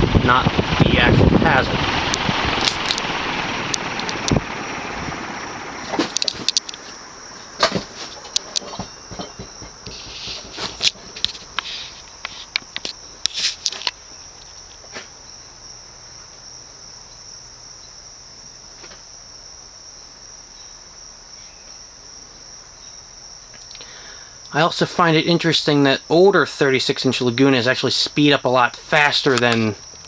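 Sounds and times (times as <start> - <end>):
fan pull chain clicking: 0.0 - 14.0
insect trill: 0.0 - 30.0.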